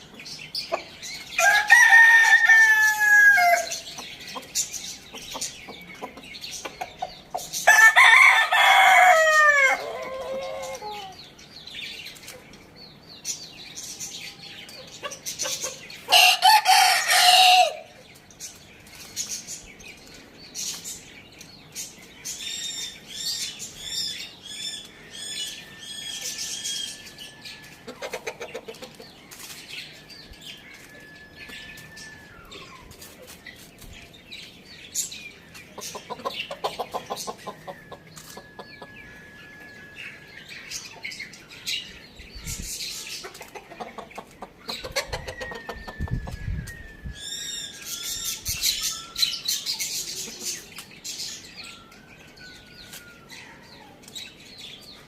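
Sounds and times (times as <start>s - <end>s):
small birds chirping: 0.0s - 55.0s
rooster crowing: 1.4s - 3.8s, 7.7s - 11.1s, 16.1s - 17.9s
hens clucking: 27.8s - 29.2s, 35.8s - 38.9s, 43.0s - 46.0s.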